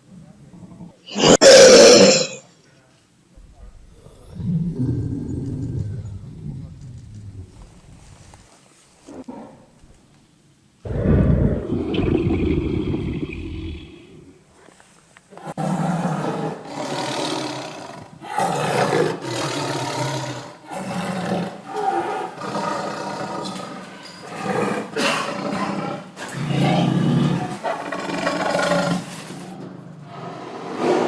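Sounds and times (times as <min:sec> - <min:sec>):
tiger roaring: 0:00.7 - 0:02.4, 0:10.9 - 0:14.4, 0:15.4 - 0:29.2.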